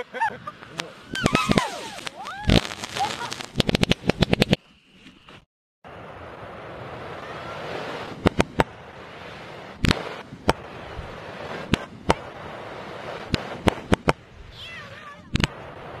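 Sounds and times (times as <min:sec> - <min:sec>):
reversed fireworks crackling hiss: 0:00.0 - 0:16.0
reversed firework bangs: 0:01.1 - 0:04.6, 0:05.9 - 0:14.2.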